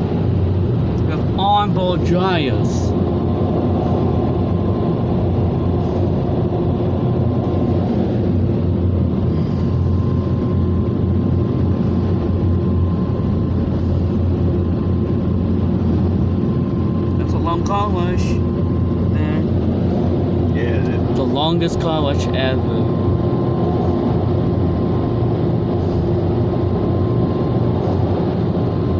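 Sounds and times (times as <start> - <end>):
faint steady whine: 0.0 - 28.9.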